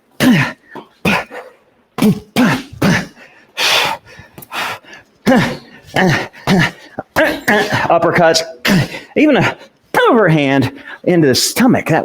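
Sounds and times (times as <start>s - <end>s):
man grunting: 0.2s - 3.2s, 5.2s - 10.4s.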